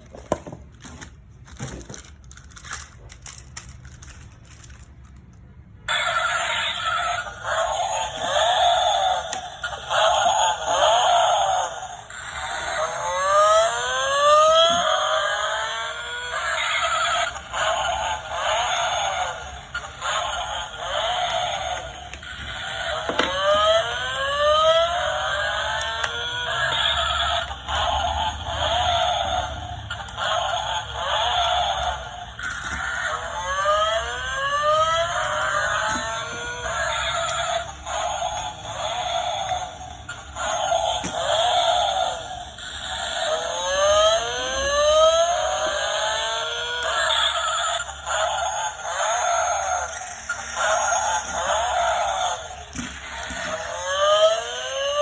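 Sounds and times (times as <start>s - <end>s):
toy car electric motor whine: 0.0s - 5.2s, 5.8s - 55.0s
packaging crinkling and rustling: 0.0s - 5.3s
toy car motor click: 1.0s - 55.0s.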